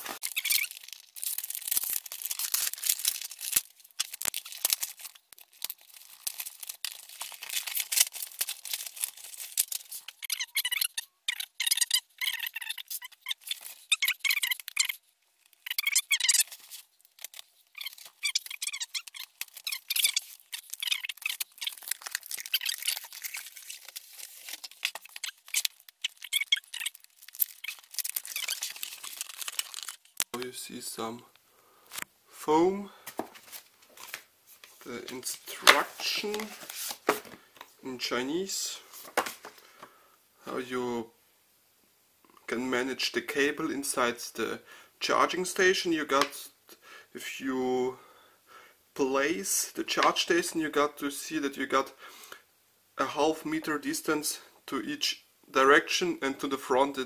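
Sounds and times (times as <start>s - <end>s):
packaging rustling and tearing: 0.0s - 30.4s, 33.1s - 37.4s
squeaks: 0.2s - 0.8s, 10.1s - 15.0s, 15.6s - 16.5s, 17.7s - 23.9s, 25.0s - 29.0s.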